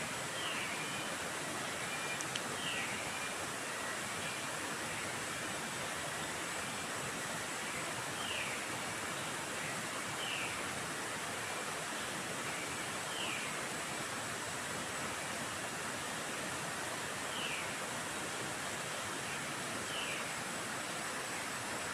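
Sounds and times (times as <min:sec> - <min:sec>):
steady rushing hiss: 0:00.0 - 0:21.9.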